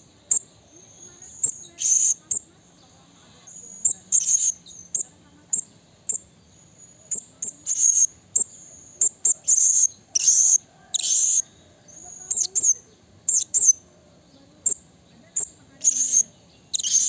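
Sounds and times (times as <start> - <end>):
parrot chirping: 0.3 - 2.5, 3.5 - 6.3, 6.9 - 13.8, 15.4 - 17.0.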